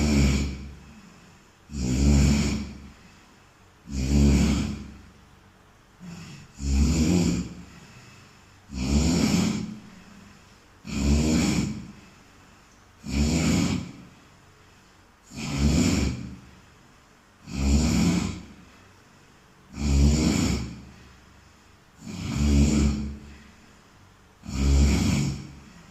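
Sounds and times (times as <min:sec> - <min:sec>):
person snoring: 0:00.0 - 0:05.2, 0:06.0 - 0:14.2, 0:14.8 - 0:16.6, 0:17.4 - 0:19.0, 0:19.7 - 0:23.8, 0:24.4 - 0:25.9
quiet breaths: 0:00.0 - 0:25.9.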